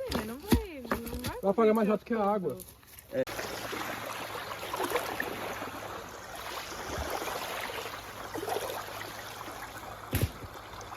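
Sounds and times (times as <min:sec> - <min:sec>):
stream water rushing: 0:03.3 - 0:10.9.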